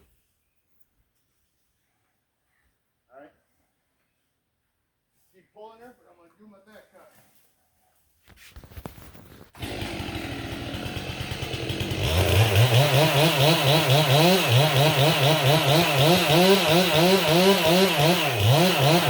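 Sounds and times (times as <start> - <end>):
chainsaw idling and revving: 9.6 - 19.0.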